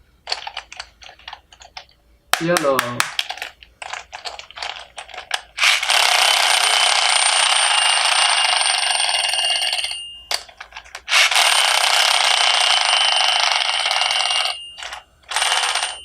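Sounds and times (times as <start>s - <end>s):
loud steady ringing: 5.6s - 16.0s.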